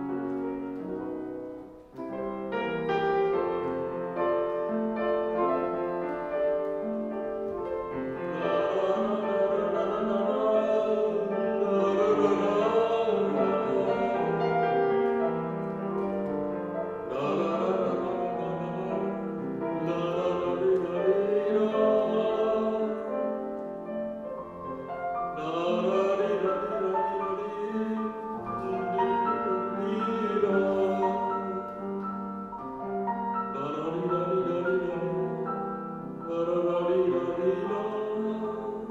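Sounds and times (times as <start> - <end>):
piano: 0.0 - 38.9
man singing with vibrato: 8.1 - 14.9, 16.9 - 23.5, 25.2 - 32.4, 33.4 - 38.9.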